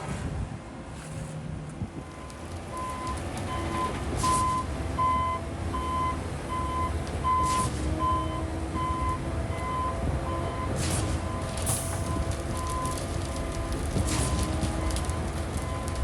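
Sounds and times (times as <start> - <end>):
diesel engine rumble: 0.0 - 16.0
reversing alarm beeping: 2.7 - 13.0.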